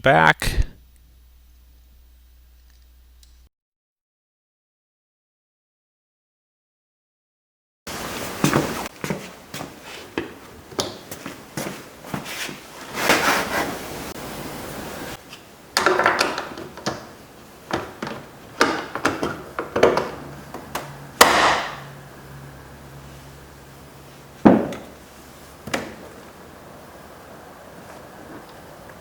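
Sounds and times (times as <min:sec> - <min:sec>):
hand tools knocking and scraping: 0:15.8 - 0:21.8.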